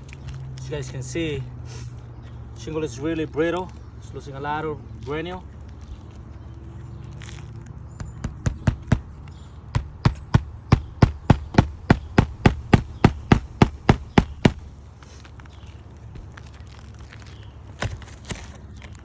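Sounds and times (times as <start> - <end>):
hammer striking roof shingles: 8.0 - 14.8.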